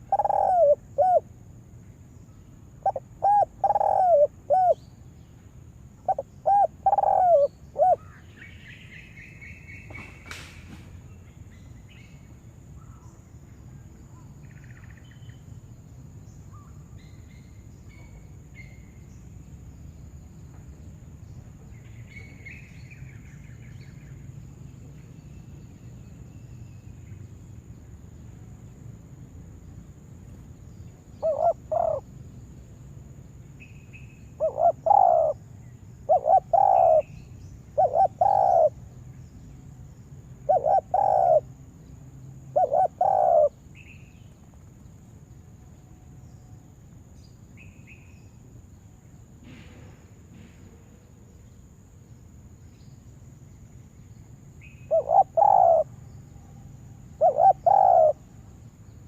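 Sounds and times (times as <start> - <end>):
dove cooing: 0.0 - 1.3, 2.8 - 4.8, 6.0 - 8.1, 31.2 - 32.1, 34.4 - 35.4, 36.1 - 37.1, 37.8 - 38.8, 40.5 - 41.4, 42.5 - 43.5, 54.9 - 55.9, 57.2 - 58.2
small birds chirping: 0.0 - 28.8, 29.6 - 45.4, 50.3 - 59.0.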